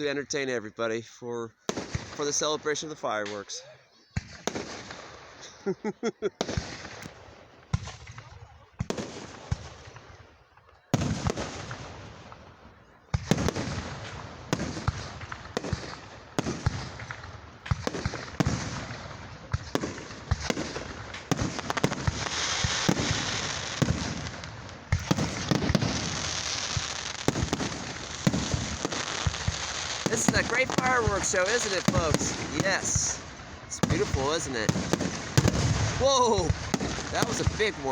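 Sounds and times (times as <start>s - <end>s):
fireworks crackling hiss: 4.2s - 10.3s, 10.9s - 37.9s
firework shell bursts booming: 13.2s - 37.9s.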